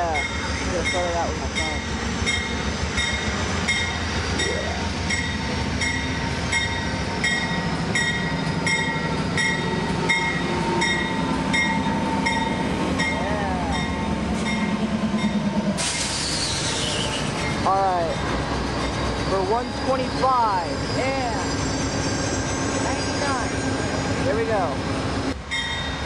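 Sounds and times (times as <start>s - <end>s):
locomotive bell ringing: 0.0s - 15.6s, 17.4s - 24.7s, 25.5s - 26.0s
diesel locomotives running: 0.0s - 26.0s
hiss of air: 15.7s - 17.4s.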